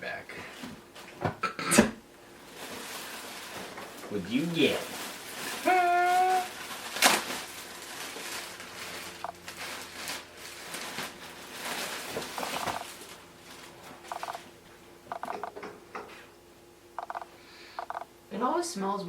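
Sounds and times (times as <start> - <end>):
plastic packaging crinkling: 4.5 - 14.4.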